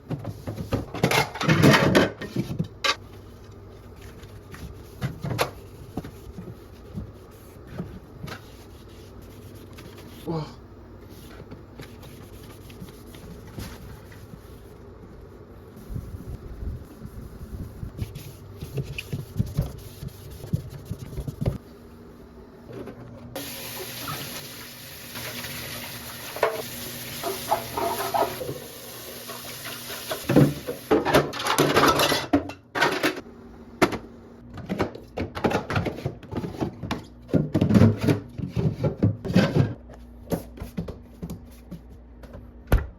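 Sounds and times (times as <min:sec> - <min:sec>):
items knocking and clattering: 0:00.0 - 0:03.0, 0:30.0 - 0:33.2, 0:33.8 - 0:39.8
dishes clattering: 0:27.2 - 0:28.5, 0:29.7 - 0:33.2.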